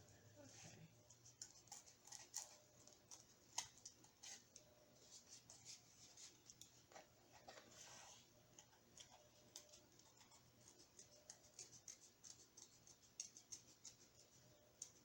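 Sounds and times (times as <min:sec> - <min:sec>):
cardboard and paper rustling: 0:01.6 - 0:09.8.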